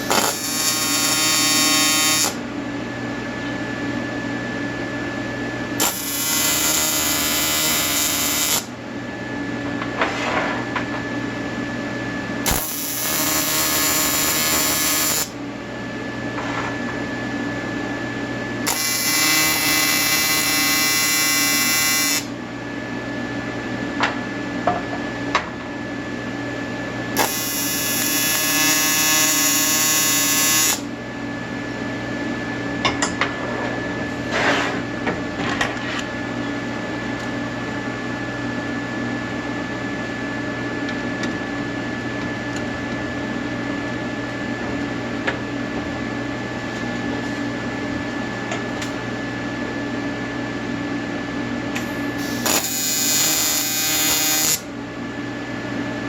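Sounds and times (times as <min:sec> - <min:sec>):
welding arc buzzing: 0:00.0 - 0:02.4, 0:05.8 - 0:08.8, 0:12.4 - 0:15.4, 0:18.6 - 0:22.3, 0:27.2 - 0:30.9, 0:51.8 - 0:54.7.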